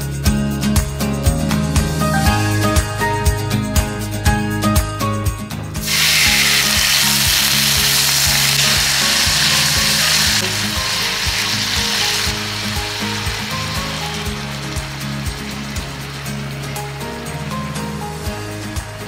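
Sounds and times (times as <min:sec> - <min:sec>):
food sizzling in hot oil: 0:05.8 - 0:19.0.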